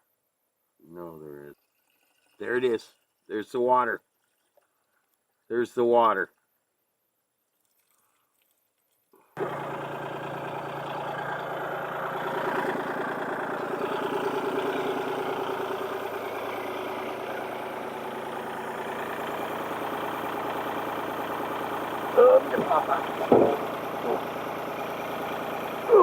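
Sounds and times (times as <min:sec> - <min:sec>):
truck engine idling: 0:09.4 - 0:26.0.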